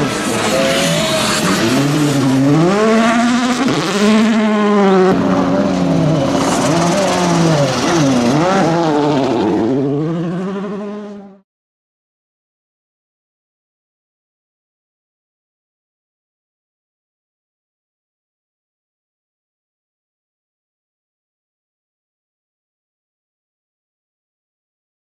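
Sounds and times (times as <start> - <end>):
rally car engine revving: 0.0 - 11.4.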